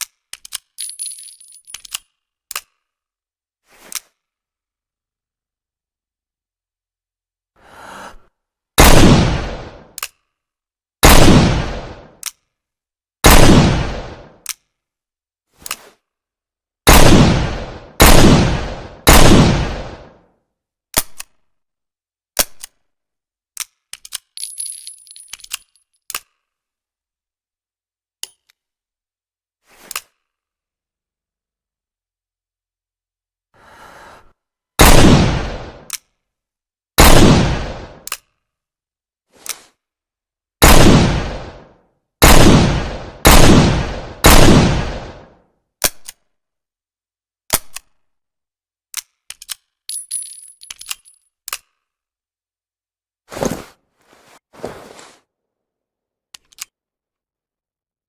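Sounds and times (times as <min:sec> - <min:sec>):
metal sliding sound: 0:03.7 - 0:04.2, 0:15.6 - 0:16.1, 0:29.7 - 0:30.3, 0:39.4 - 0:39.8.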